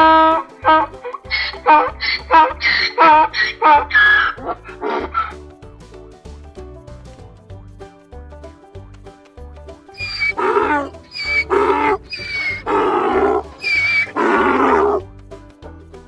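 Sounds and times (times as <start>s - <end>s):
background music: 0.0s - 9.1s, 9.7s - 15.3s
large animal calling: 1.4s - 5.1s, 10.0s - 15.0s.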